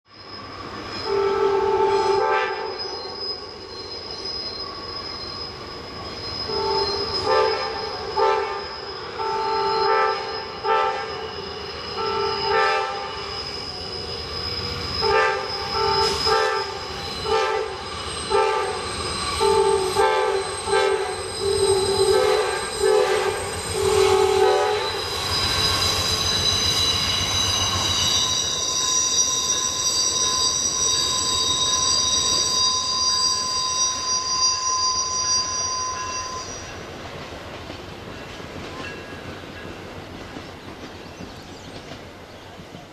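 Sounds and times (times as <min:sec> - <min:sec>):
wheels squealing on rails: 0:00.1 - 0:42.9
train air horn blasts: 0:01.0 - 0:03.0, 0:06.5 - 0:11.4, 0:12.0 - 0:13.3, 0:15.0 - 0:25.2.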